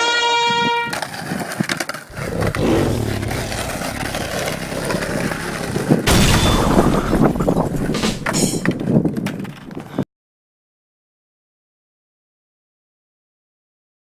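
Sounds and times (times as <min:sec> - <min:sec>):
trumpet note: 0:00.0 - 0:01.0
skateboard wheels rolling on pavement: 0:00.3 - 0:06.1, 0:06.8 - 0:10.0.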